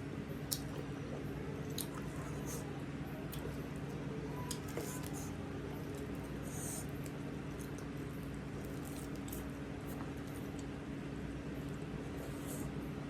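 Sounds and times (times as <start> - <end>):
steady low hum: 0.0 - 13.0
person chewing with mouth clicks: 0.5 - 2.7, 3.3 - 3.6.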